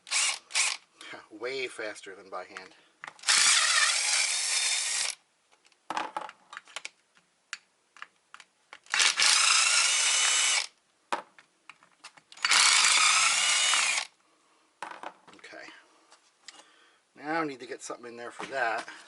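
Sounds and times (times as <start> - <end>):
electric impact driver running: 0.1 - 0.8, 3.2 - 5.2, 8.9 - 10.7, 12.4 - 14.1.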